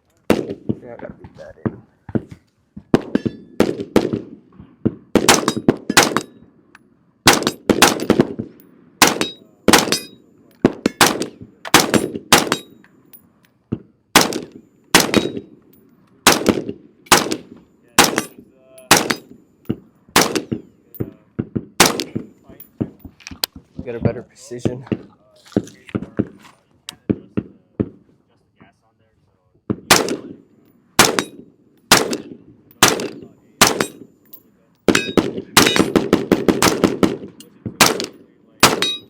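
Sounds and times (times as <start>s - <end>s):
gunshots with echo: 9.0s - 10.1s, 10.7s - 12.7s, 14.2s - 15.5s, 16.3s - 19.3s, 20.2s - 20.6s, 21.8s - 22.9s, 29.9s - 30.4s, 31.0s - 34.0s, 34.9s - 39.0s.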